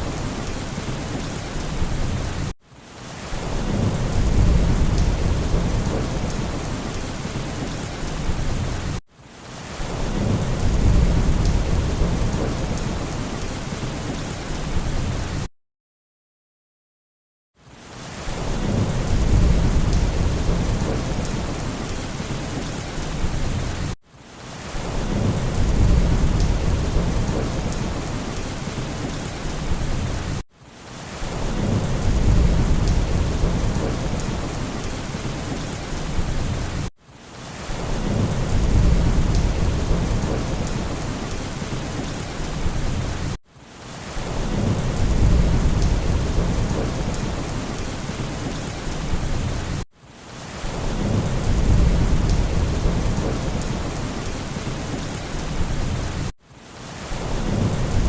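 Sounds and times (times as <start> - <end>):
heavy rain: 0.0 - 15.5, 17.6 - 58.0
low rolling thunder: 3.4 - 9.0, 9.9 - 13.4, 18.4 - 23.9, 24.8 - 30.4, 31.3 - 36.9, 37.9 - 43.4, 44.2 - 49.8, 50.7 - 56.2, 57.2 - 58.0.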